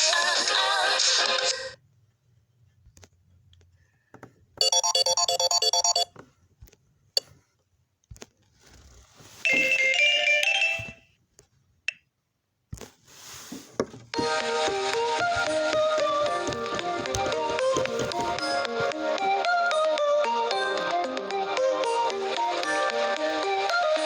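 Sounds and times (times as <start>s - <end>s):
phone ringtone melody: 4.6s - 6.1s, 9.5s - 11.0s.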